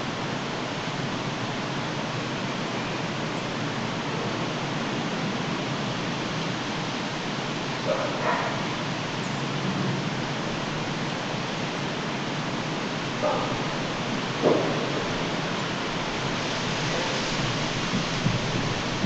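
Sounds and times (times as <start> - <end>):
steady background hiss: 0.0 - 19.0
dog barking: 7.8 - 8.7, 13.2 - 13.7.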